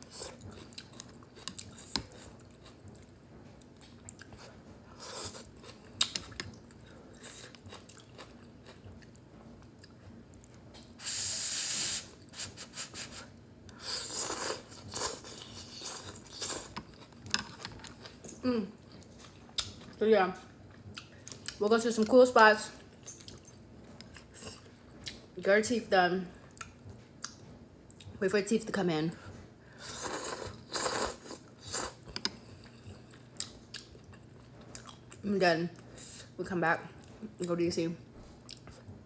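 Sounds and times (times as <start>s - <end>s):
person chewing noodles: 0.0s - 3.1s, 3.7s - 10.1s, 10.9s - 20.0s, 29.8s - 35.2s, 38.3s - 38.9s.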